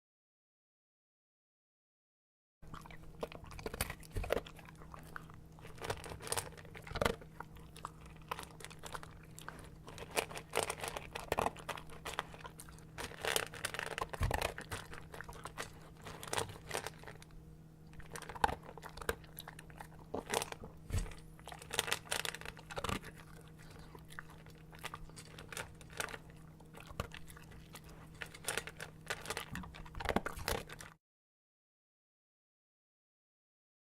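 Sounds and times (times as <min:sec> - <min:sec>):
dog crunching dry kibble: 0:02.6 - 0:31.0
faint steady hum: 0:02.6 - 0:31.0.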